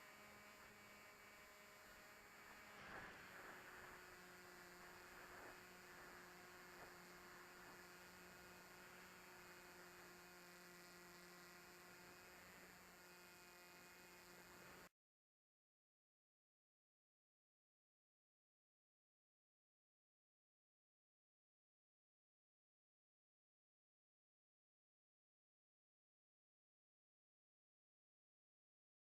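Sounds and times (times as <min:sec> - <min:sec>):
faint electrical hum: 0:00.0 - 0:14.9.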